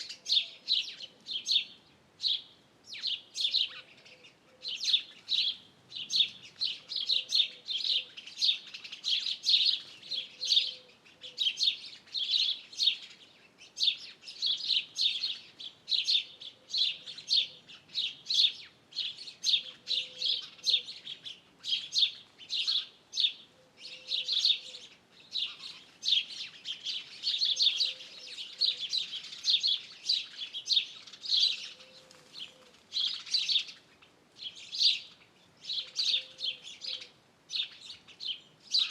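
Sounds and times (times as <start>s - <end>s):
songbirds chirping: 0.0s - 38.9s
faint low bird call: 19.4s - 26.2s, 30.7s - 33.7s.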